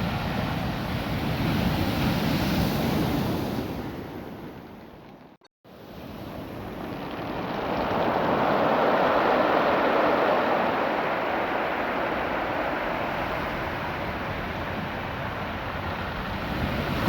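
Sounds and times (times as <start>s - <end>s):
surf washing over pebbles: 5.8s - 17.0s.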